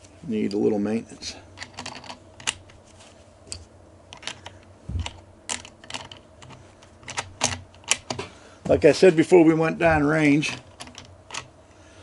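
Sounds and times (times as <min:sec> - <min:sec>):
rifle cartridges clicking and rattling: 0:01.6 - 0:02.8, 0:03.5 - 0:08.3, 0:10.4 - 0:11.5.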